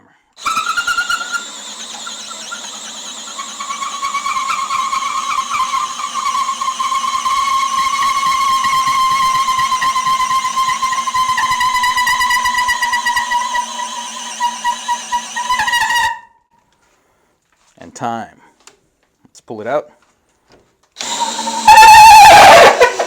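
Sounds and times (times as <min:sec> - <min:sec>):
hammer drill boring into wood: 0:00.4 - 0:16.2, 0:21.0 - 0:23.0.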